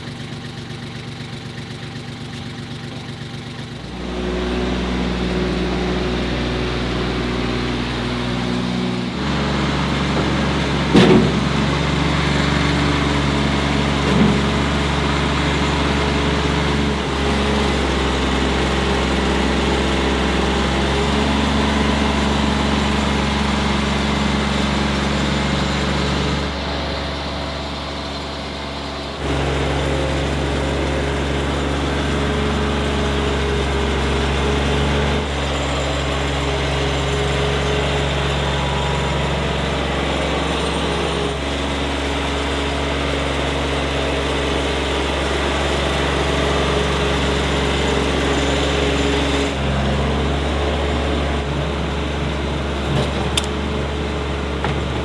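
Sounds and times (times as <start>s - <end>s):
tractor engine running: 0.0s - 55.0s.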